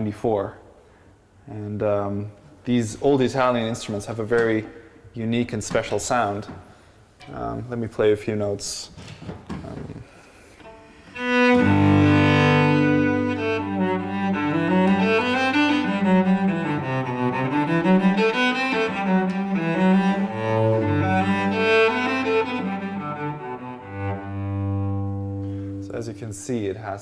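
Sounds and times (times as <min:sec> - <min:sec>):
bowed cello: 0:10.6 - 0:26.5.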